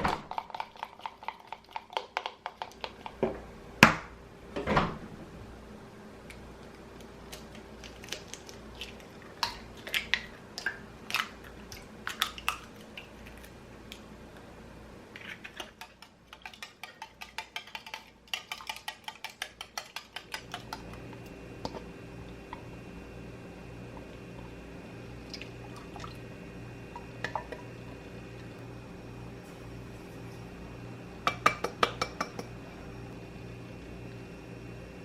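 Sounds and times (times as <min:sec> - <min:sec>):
steady low hum: 0:20.2 - 0:35.0.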